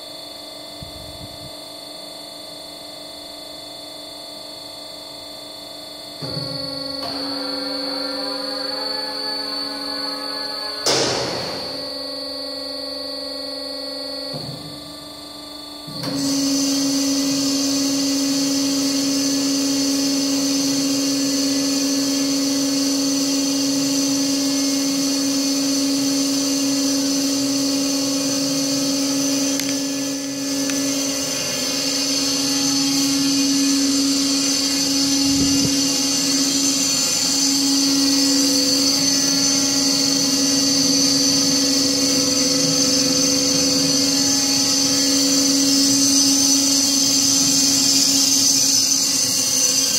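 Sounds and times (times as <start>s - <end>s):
bandsaw running: 16.1s - 49.9s.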